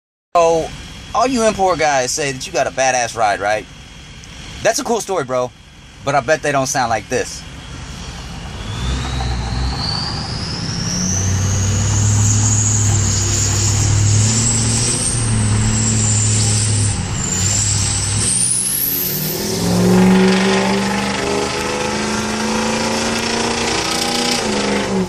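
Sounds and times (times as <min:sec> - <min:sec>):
diesel engine running: 0:00.4 - 0:25.0
turbocharger whistling: 0:06.5 - 0:25.0.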